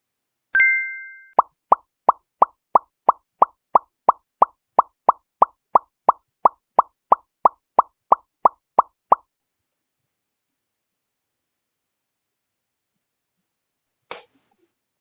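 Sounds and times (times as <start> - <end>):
cartoon plop sound effect: 1.4 - 9.2.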